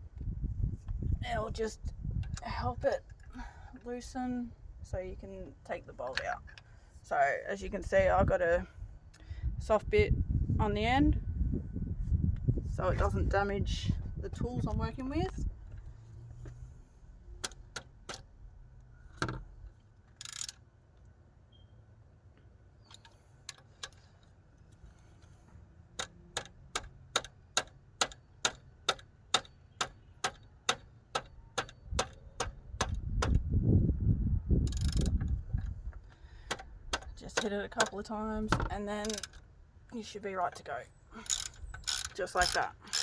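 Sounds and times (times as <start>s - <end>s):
ratchet clicking: 20.2s - 20.6s, 34.7s - 35.4s, 39.0s - 39.4s, 41.2s - 43.0s.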